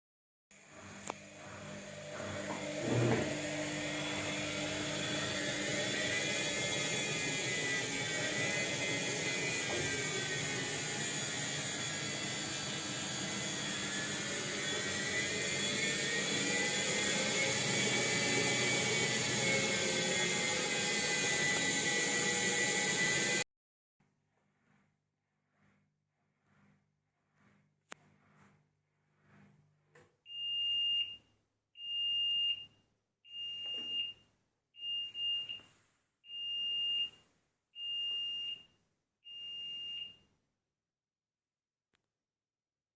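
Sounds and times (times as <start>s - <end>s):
washing machine motor whirring: 0.6s - 23.4s, 24.3s - 31.2s.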